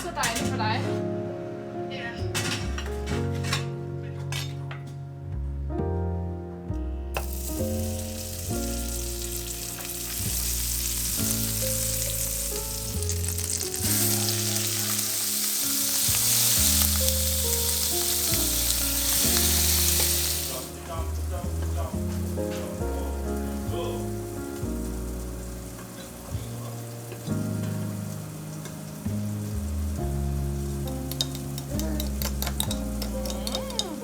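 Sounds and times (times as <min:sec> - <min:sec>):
background music: 0:00.0 - 0:34.0
food sizzling in a pan: 0:07.2 - 0:34.0.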